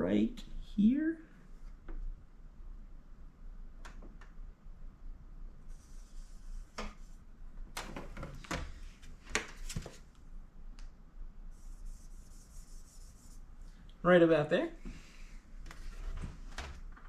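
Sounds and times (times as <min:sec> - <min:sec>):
marker scratching on plastic: 0:11.5 - 0:13.4.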